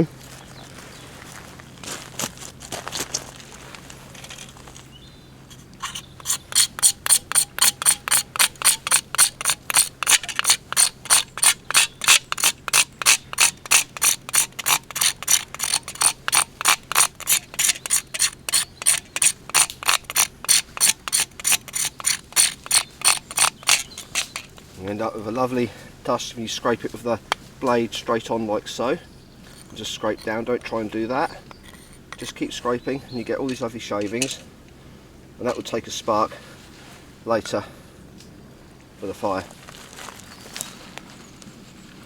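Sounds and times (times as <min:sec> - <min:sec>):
knife scraping wood: 0:05.4 - 0:24.9, 0:29.4 - 0:32.6.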